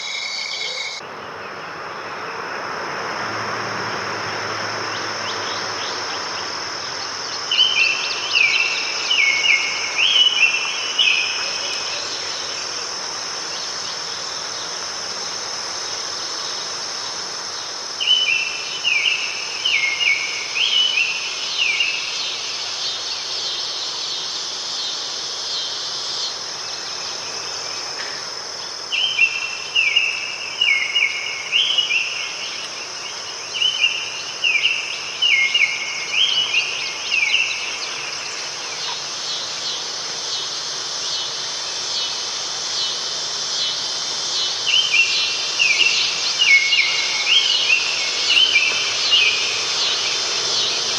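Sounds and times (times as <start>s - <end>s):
insect trill: 0.0s - 50.9s
songbird whistling song: 44.4s - 50.9s.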